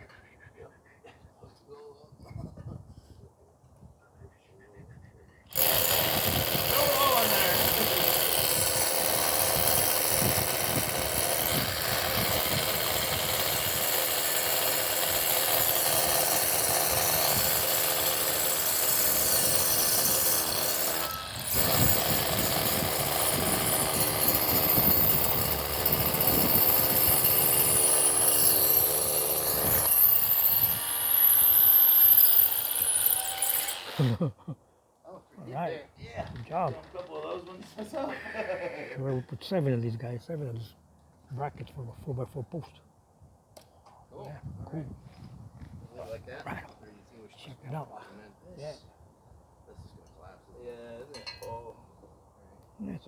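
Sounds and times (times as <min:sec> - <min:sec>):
hammer drill boring into concrete: 0:05.5 - 0:34.1.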